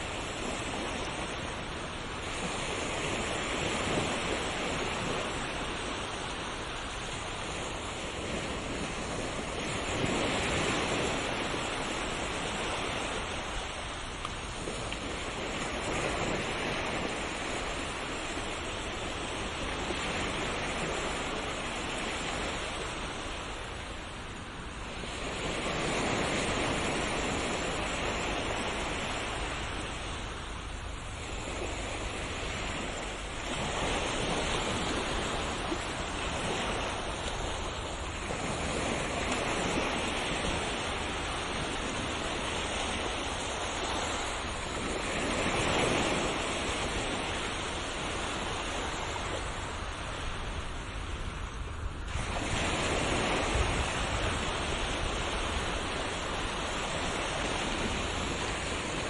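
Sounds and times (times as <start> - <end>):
ocean waves breaking on shore: 0.0 - 59.0.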